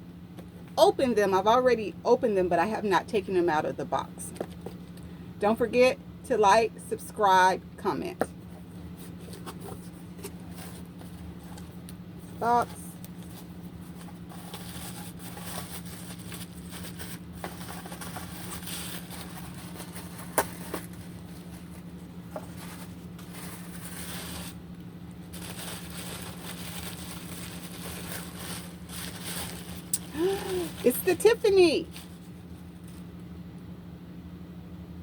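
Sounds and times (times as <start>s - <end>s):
steady low hum: 0.0s - 35.0s
packaging rustling and scraping: 8.4s - 33.2s.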